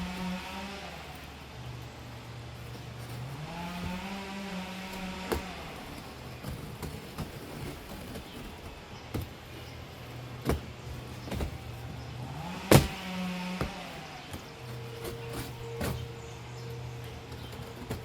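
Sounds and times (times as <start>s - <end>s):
distant chainsaw running: 0.0s - 18.0s
sharp knocks: 12.6s - 13.9s.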